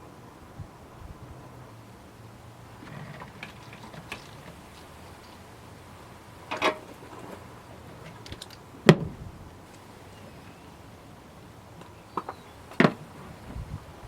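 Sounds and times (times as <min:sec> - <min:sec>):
faint steady hum: 0:00.0 - 0:14.0
small car parts rattling: 0:02.6 - 0:05.7, 0:06.4 - 0:09.8.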